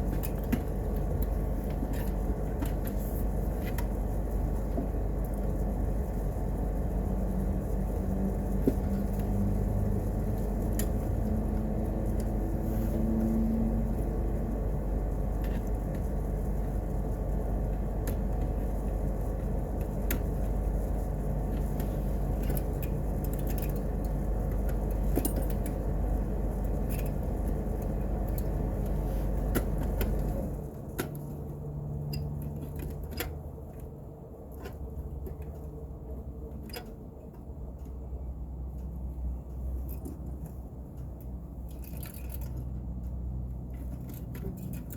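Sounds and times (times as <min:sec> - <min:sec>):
low mechanical hum: 0:00.0 - 0:44.9.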